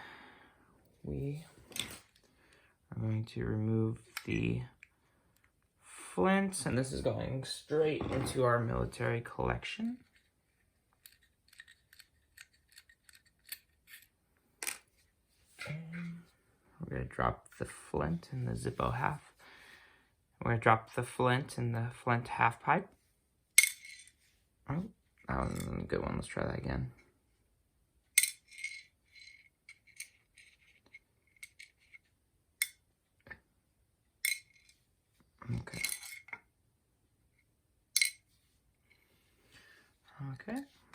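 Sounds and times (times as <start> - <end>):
flint rolling and rattling: 10.0 - 14.8, 28.2 - 32.1.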